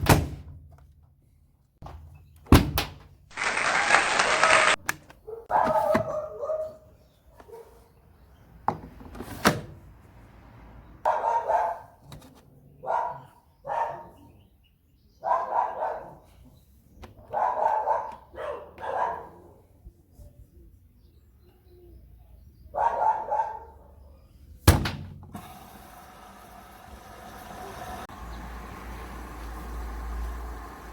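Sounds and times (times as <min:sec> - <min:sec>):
dog barking: 0:05.2 - 0:07.9, 0:11.0 - 0:12.0, 0:12.8 - 0:14.4, 0:15.2 - 0:16.3, 0:17.2 - 0:19.6, 0:22.7 - 0:24.2.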